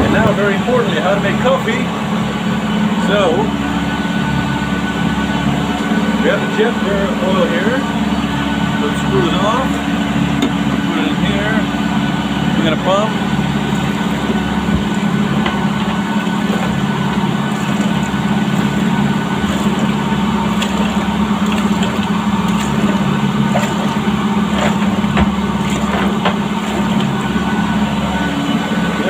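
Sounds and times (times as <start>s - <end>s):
low drone inside yacht hull: 0.0s - 29.0s
hand water pump clicking: 13.6s - 27.3s.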